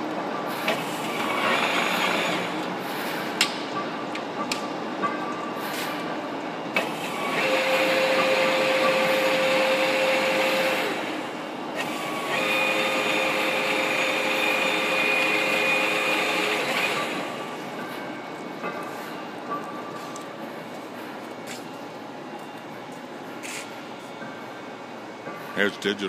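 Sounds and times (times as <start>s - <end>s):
lathe motor whine: 0.7s - 2.8s, 6.8s - 18.2s.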